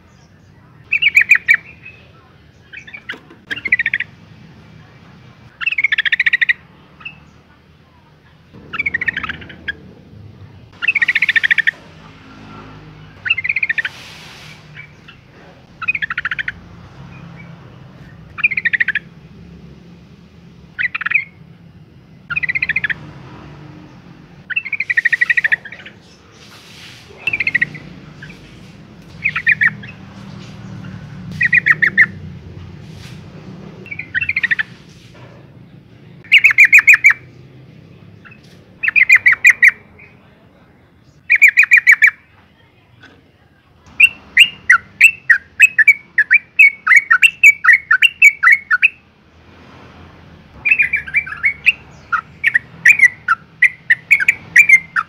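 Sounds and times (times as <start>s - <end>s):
bird chattering calls: 0.2s - 4.2s, 5.4s - 7.5s, 8.4s - 10.1s, 10.7s - 19.5s, 20.7s - 21.4s, 22.2s - 23.2s, 23.9s - 32.3s, 33.9s - 35.3s, 36.1s - 37.5s, 38.2s - 40.4s, 41.1s - 42.3s, 43.9s - 49.0s, 50.6s - 55.0s.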